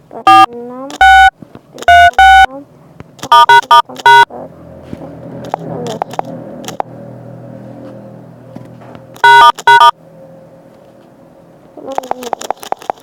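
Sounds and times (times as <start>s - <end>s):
phone keypad beeps: 0.3s - 2.5s, 3.2s - 4.3s, 9.2s - 10.0s.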